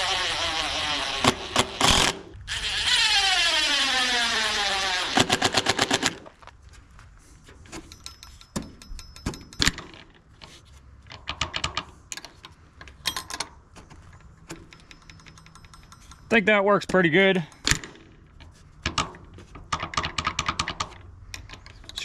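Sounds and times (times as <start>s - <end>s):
drill clutch rapid clicking: 0.0s - 6.2s
power drill driving a screw: 0.0s - 6.2s
small hardware being handled: 7.4s - 19.9s.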